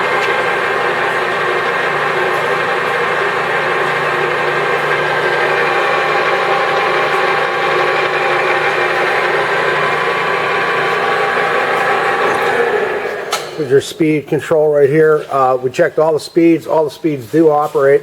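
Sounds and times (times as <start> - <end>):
whining gear tones: 0.0 - 14.0
lathe motor whirring: 0.0 - 14.7.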